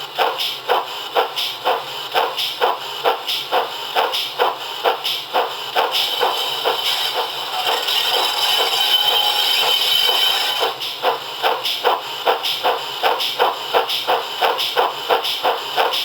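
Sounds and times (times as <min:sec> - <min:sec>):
steam locomotive chuffs from speaker: 0:00.0 - 0:16.0
steady hiss with thin high tone: 0:06.0 - 0:10.7.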